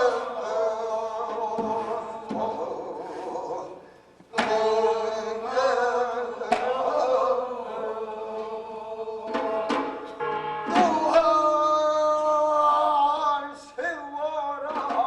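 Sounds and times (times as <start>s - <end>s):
sharp percussion strikes: 9.3s - 12.0s.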